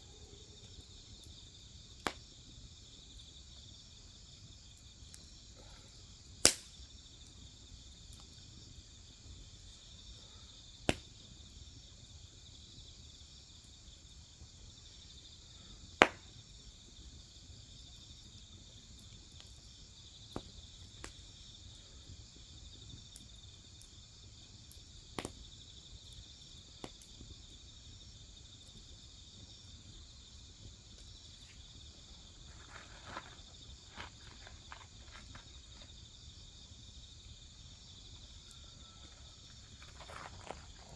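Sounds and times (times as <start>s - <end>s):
crickets chirring: 0.0s - 40.9s
firewood cracking and popping: 6.4s - 7.2s, 16.0s - 16.6s, 24.7s - 27.5s, 30.0s - 40.9s.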